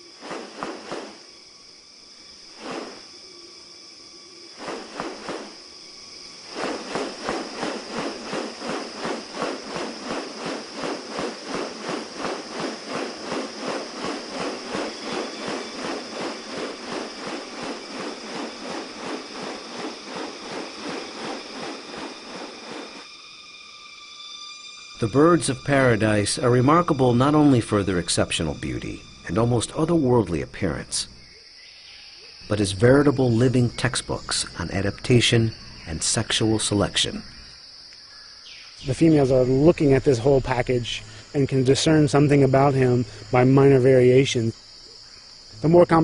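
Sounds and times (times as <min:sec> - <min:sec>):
insects droning: 0:00.0 - 0:46.0
fast regular pulsing: 0:06.5 - 0:23.0.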